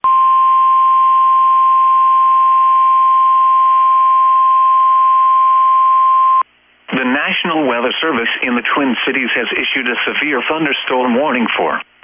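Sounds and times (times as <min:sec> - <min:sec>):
faint radio hiss: 0:06.4 - 0:12.0.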